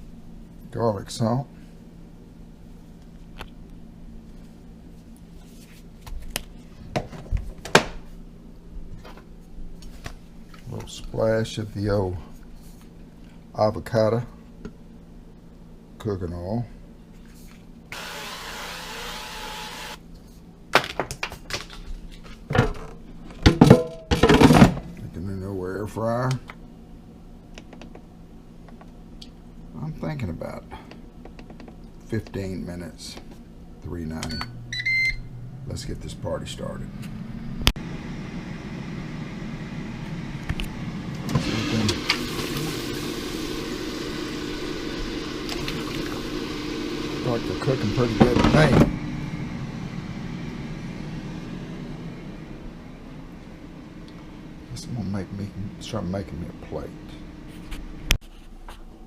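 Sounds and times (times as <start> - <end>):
air fryer fan whirring: 17.9 - 20.0, 34.4 - 58.2.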